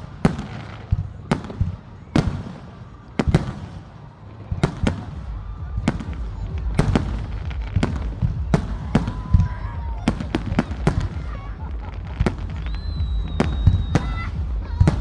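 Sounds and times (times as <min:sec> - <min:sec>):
fireworks bursting in sharp bangs: 0:00.0 - 0:15.0
continuous low rumble: 0:04.6 - 0:15.0.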